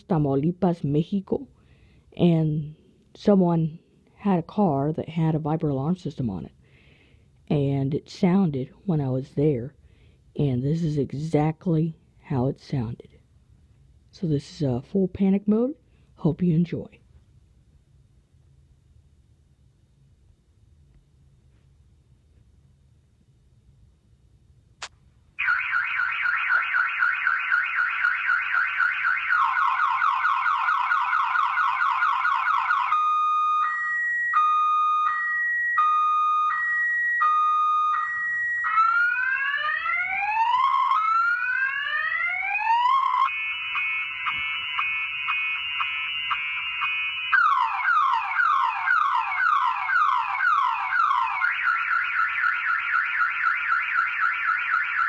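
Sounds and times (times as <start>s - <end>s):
car alarm siren: 25.4s - 55.0s.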